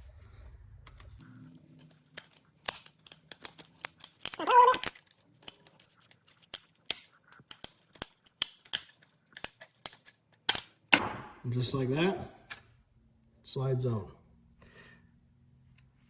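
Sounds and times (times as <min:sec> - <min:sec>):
screwdriver clicking and scraping metal: 0:01.8 - 0:10.8.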